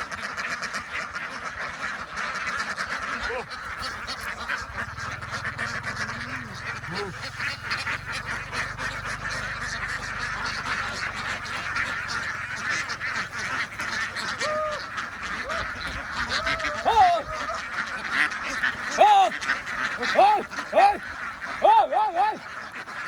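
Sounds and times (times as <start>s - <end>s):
drawn-out duck calls: 0.0s - 23.0s
ducks quacking: 0.0s - 23.0s
low steady hum: 3.9s - 19.0s.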